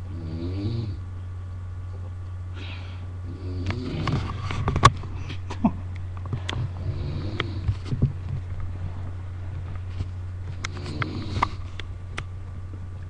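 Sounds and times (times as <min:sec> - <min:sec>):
steady low hum: 0:00.0 - 0:13.0
person snoring: 0:00.1 - 0:01.0, 0:02.6 - 0:04.2, 0:06.8 - 0:07.7, 0:10.7 - 0:11.6.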